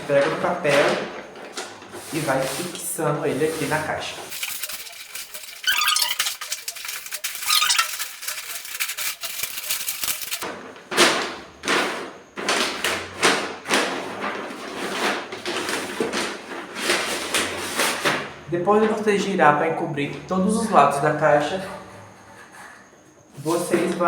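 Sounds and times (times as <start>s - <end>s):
wrapping paper crinkling: 3.4s - 10.4s.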